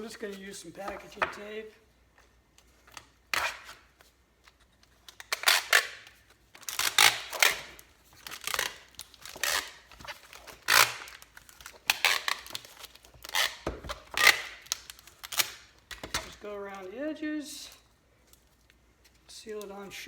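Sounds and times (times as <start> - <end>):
packaging tape ripping off roll: 5.0 - 16.4.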